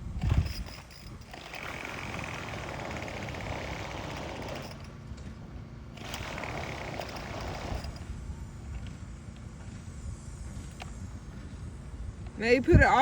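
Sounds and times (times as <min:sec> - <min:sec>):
small two-stroke engine running: 0:00.0 - 0:08.1.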